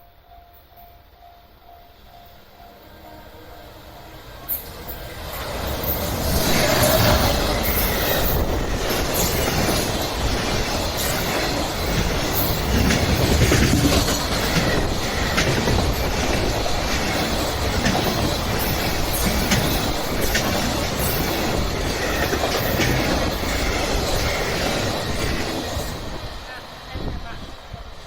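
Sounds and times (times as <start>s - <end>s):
train wheels clattering over rail joints: 4.6s - 26.4s.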